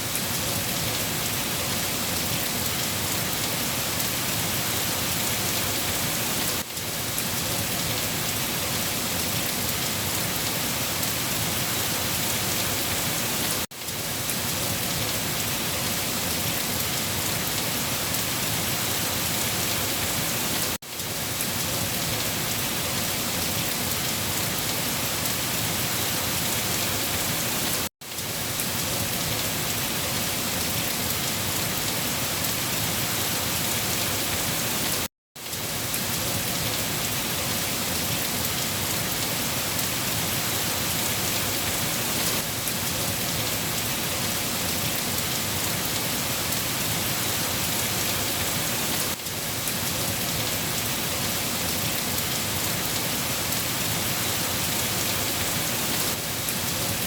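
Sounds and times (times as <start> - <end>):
rain pattering on a surface: 0.0 - 57.0.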